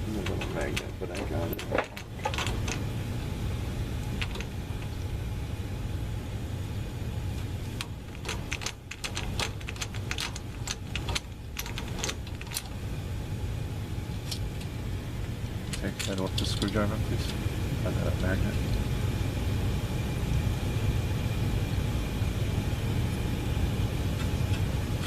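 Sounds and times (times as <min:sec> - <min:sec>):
screwdriver tapping metal parts: 0:07.8 - 0:12.7, 0:15.7 - 0:16.9.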